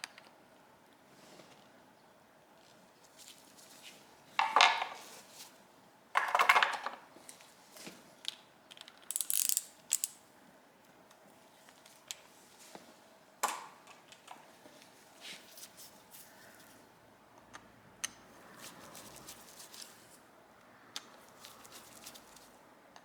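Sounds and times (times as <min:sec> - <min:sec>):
metal parts clicking and rattling: 0:08.3 - 0:10.2.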